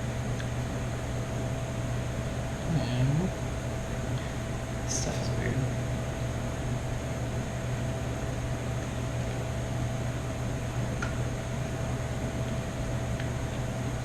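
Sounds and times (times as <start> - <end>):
faint high whine: 0.0 - 14.0
machine hum with hiss: 0.0 - 14.0.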